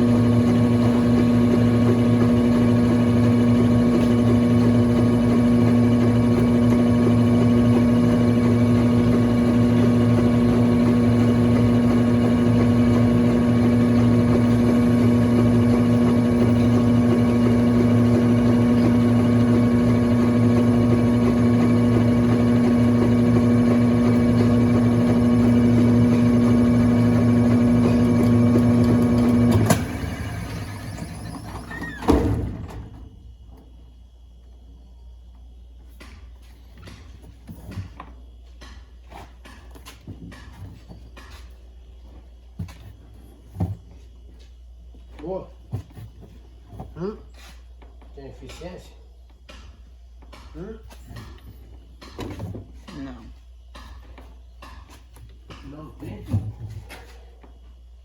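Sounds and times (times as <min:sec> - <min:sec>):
washing machine motor hum: 0:00.0 - 0:33.8.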